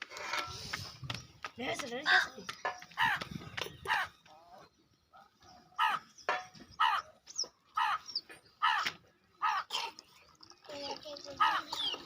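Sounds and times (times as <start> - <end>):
crow cawing: 5.8 - 6.0, 6.8 - 7.1, 7.8 - 8.0, 8.6 - 9.7.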